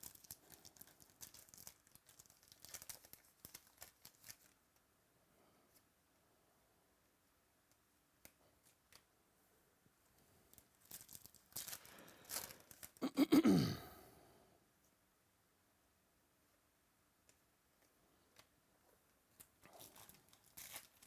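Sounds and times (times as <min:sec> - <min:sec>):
wrapper tearing and crinkling: 0:00.0 - 0:04.6, 0:10.5 - 0:13.0, 0:19.6 - 0:21.0.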